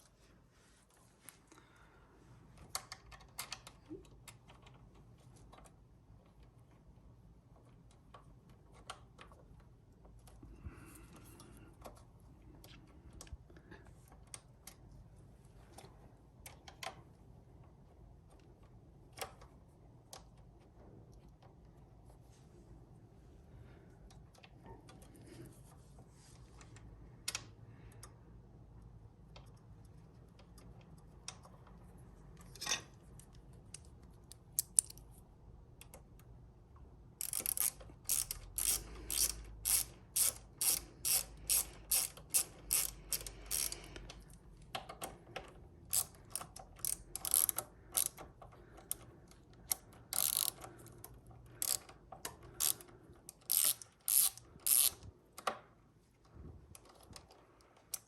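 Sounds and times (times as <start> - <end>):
ratchet wrench clicking: 37.2 - 44.3, 45.9 - 48.2, 49.7 - 55.0.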